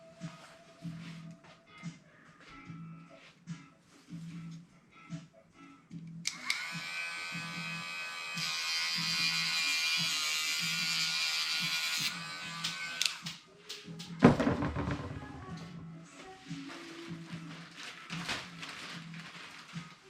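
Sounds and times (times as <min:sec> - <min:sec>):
background music with steady beat: 0:00.0 - 0:20.0
loud knock: 0:14.2 - 0:15.6.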